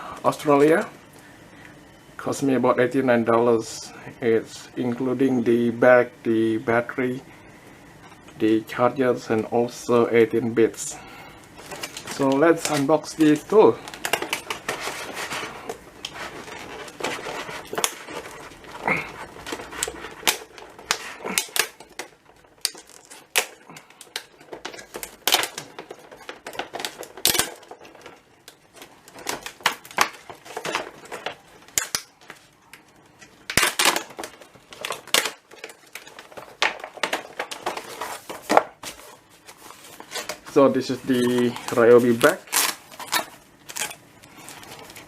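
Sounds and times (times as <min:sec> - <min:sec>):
packaging rustling: 0:11.2 - 0:45.0.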